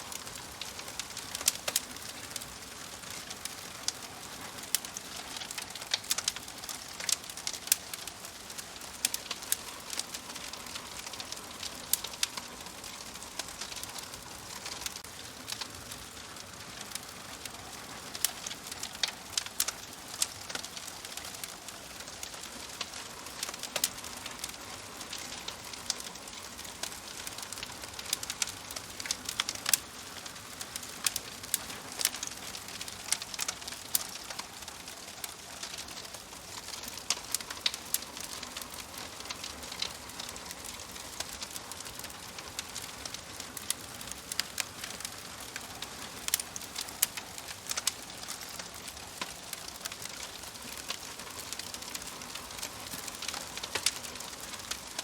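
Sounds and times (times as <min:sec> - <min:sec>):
wood fire crackling in stove: 0:00.0 - 0:55.0.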